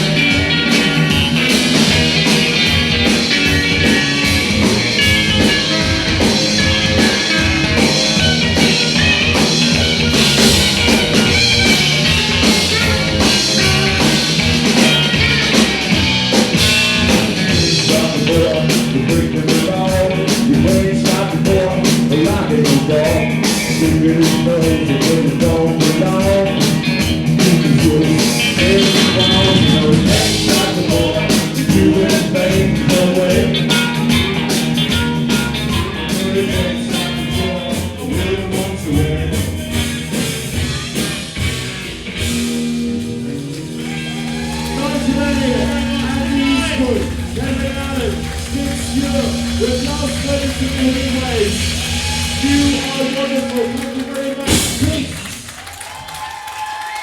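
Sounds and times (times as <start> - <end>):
electric guitar lines: 0.0 - 38.5, 39.1 - 55.5
bass guitar: 0.0 - 56.9
steady drum beat: 0.0 - 57.0.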